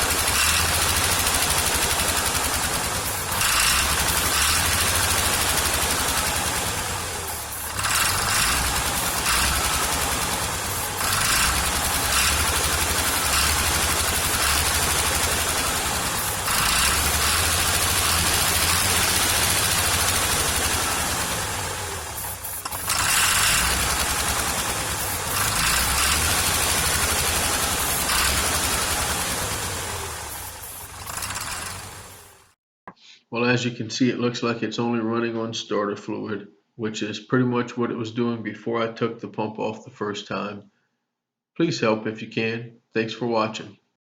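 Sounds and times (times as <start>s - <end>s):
tractor diesel engine running roughly: 0.0s - 32.5s.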